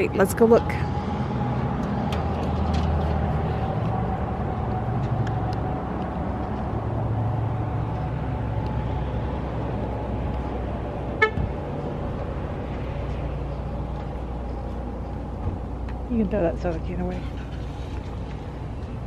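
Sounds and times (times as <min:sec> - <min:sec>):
road traffic rumble: 0:00.0 - 0:19.0.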